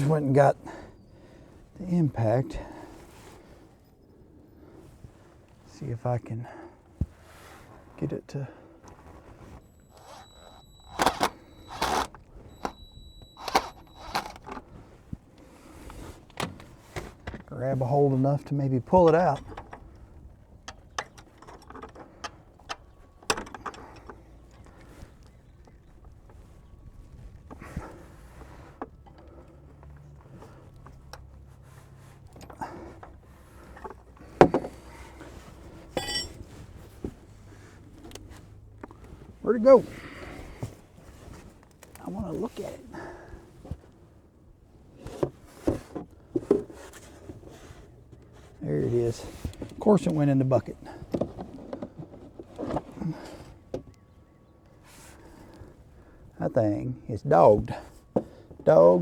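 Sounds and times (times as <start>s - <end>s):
impact driver bursts: 9.7s - 14.5s
metal tools knocking and clicking: 35.9s - 36.5s
ringing metal clink: 35.9s - 36.5s.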